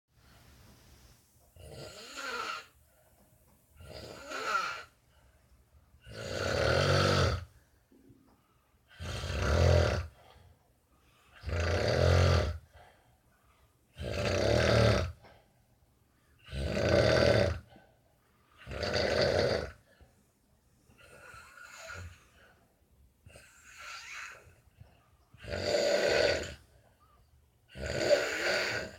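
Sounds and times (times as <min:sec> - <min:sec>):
heavy rasping snoring: 0:01.6 - 0:02.8, 0:03.8 - 0:05.0, 0:06.0 - 0:07.6, 0:08.9 - 0:10.3, 0:11.3 - 0:12.8, 0:13.9 - 0:15.3, 0:16.4 - 0:17.7, 0:18.6 - 0:19.9, 0:21.0 - 0:22.6, 0:23.3 - 0:26.7, 0:27.7 - 0:28.9.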